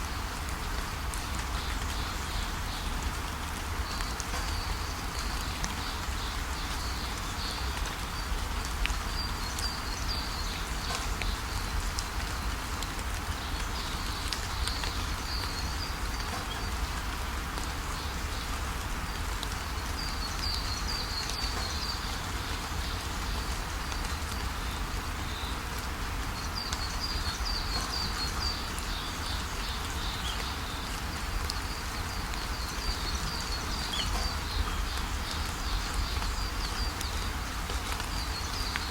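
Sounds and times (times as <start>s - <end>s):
birds chirping: 26.4s - 37.5s.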